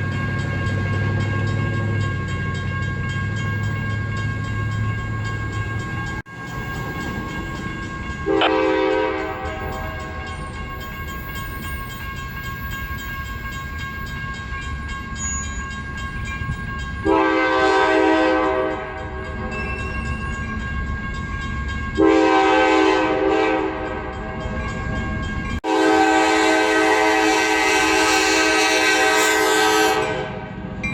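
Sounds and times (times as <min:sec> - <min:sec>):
train rumbling past: 0:00.0 - 0:30.9
locomotive air horn blasts: 0:08.2 - 0:10.2, 0:17.0 - 0:19.2, 0:22.0 - 0:24.2, 0:25.6 - 0:30.6.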